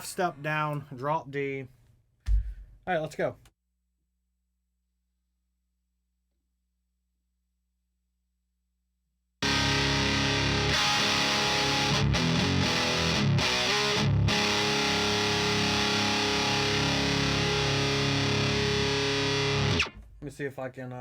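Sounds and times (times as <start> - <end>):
distorted electric guitar chords: 9.4 - 20.0.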